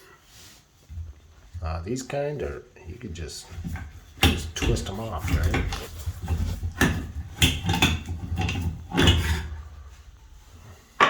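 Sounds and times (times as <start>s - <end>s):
knocks and clunks on metal fitting: 3.7s - 9.5s.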